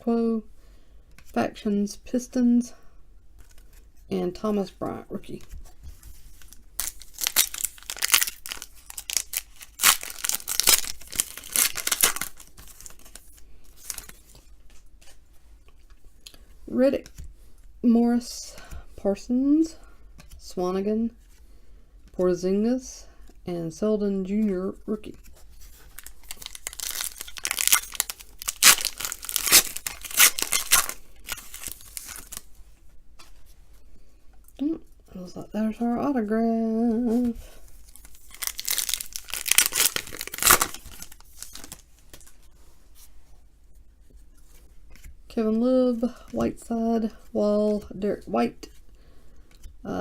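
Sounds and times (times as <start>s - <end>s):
wrapper tearing and crinkling: 6.3s - 14.4s, 25.8s - 32.5s, 37.8s - 42.4s.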